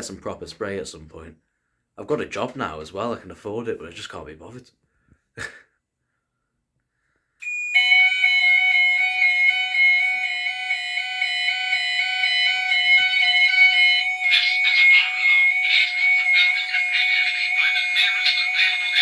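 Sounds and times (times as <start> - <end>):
fire alarm steady tones: 7.4 - 19.0
harsh rasping alarm noise: 7.4 - 19.0.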